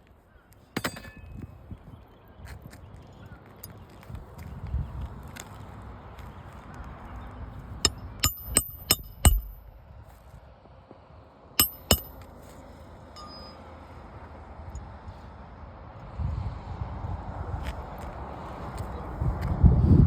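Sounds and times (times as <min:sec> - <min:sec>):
hammer striking nails: 0:07.8 - 0:09.7, 0:11.6 - 0:12.3.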